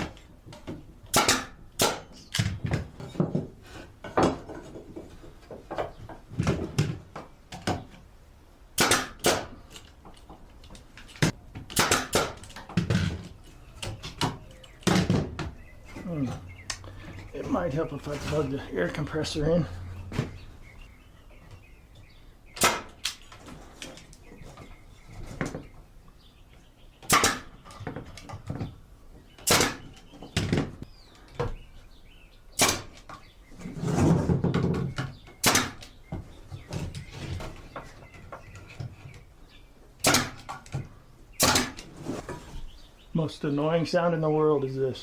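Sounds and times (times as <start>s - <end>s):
pneumatic nailer shots into wood: 1.1s - 2.6s, 8.8s - 9.6s, 11.6s - 13.1s, 22.6s - 23.2s, 27.0s - 27.6s, 29.4s - 30.0s, 32.6s - 33.1s, 35.4s - 35.9s, 40.0s - 40.6s, 41.4s - 41.9s.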